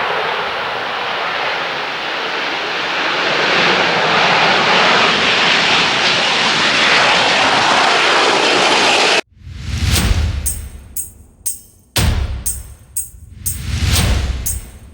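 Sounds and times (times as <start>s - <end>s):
turboprop airliner engines: 0.0s - 9.2s.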